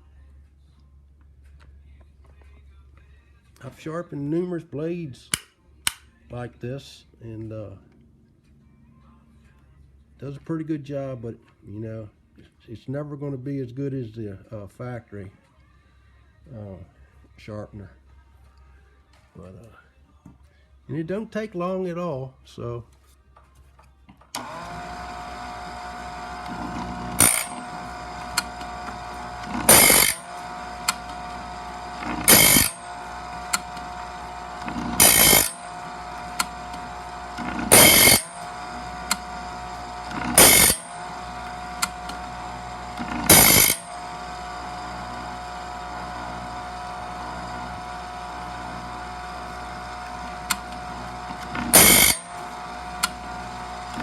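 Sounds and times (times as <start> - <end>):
electric sharpener whining: 24.4 - 54.0
grinding saw blade teeth: 24.4 - 54.0.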